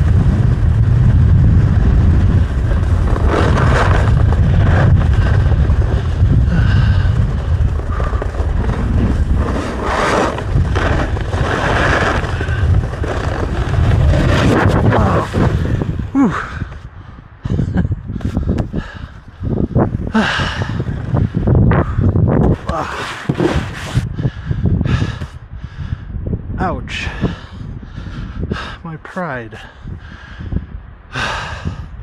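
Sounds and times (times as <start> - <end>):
wind buffeting microphone: 0.0 - 32.0
ski edges scraping snow: 2.5 - 16.0, 22.4 - 24.1.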